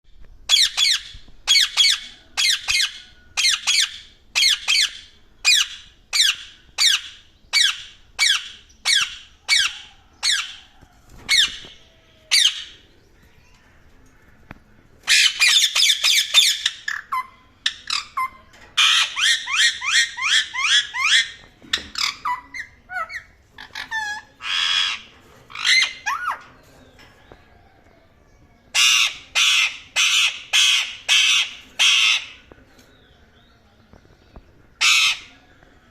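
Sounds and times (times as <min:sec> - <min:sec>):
parrot chattering and squawking: 0:15.1 - 0:26.5, 0:28.7 - 0:32.5, 0:34.8 - 0:35.3
parrot screeching: 0:22.0 - 0:26.4, 0:28.8 - 0:32.4, 0:34.8 - 0:35.3.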